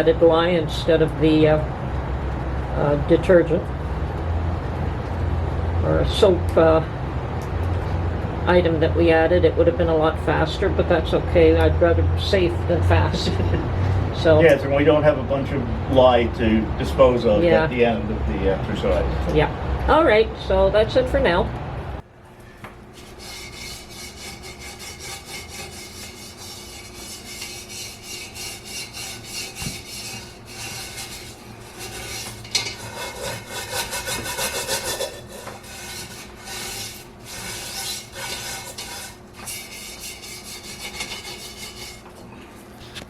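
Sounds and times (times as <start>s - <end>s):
scrubbing cast iron kettle: 23.0s - 42.2s.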